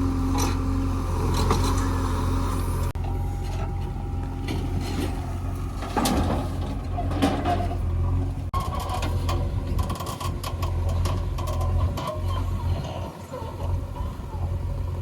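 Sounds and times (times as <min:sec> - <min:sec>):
heavy diesel engine running: 0:00.0 - 0:15.0
knocks and clanks: 0:04.4 - 0:13.0.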